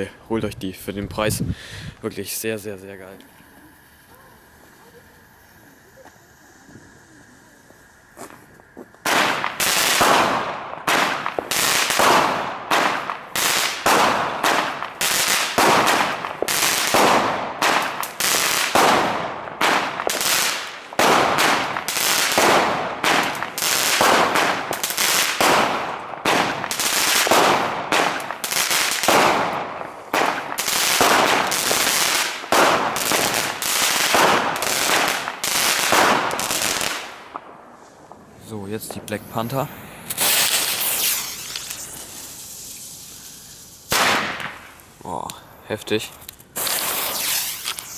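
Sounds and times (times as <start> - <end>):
fireworks bangs with echo: 8.2 - 44.8.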